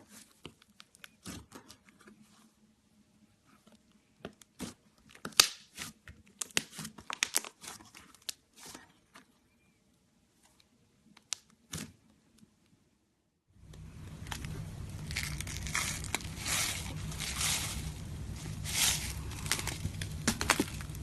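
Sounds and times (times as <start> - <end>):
slime crackling and popping: 4.5 - 8.4, 14.1 - 17.5, 18.5 - 21.0.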